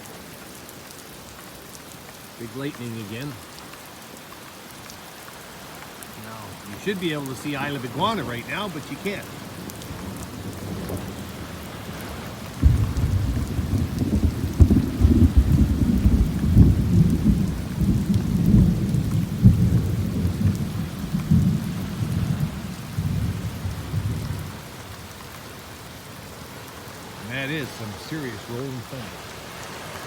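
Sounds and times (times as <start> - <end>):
steady rain falling: 0.0 - 30.0
rolling thunder: 12.6 - 24.6.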